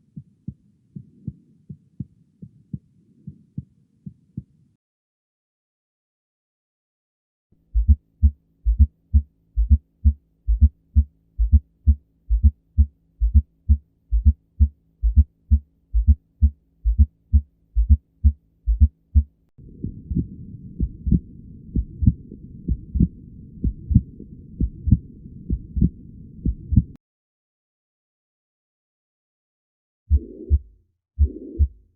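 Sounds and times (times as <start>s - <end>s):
heartbeat lub-dub: 7.7s - 27.0s, 30.1s - 31.9s
heart murmur rushing noise: 19.6s - 27.0s.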